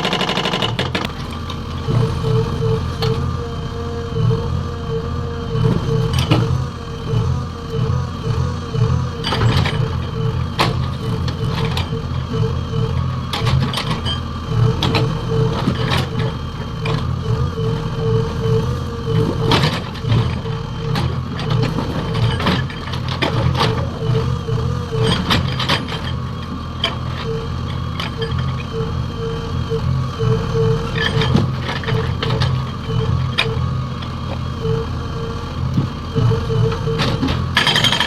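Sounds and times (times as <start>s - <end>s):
hydraulic breaker hammering: 0.0s - 2.2s, 35.2s - 38.0s
diesel engine under load: 0.0s - 38.0s.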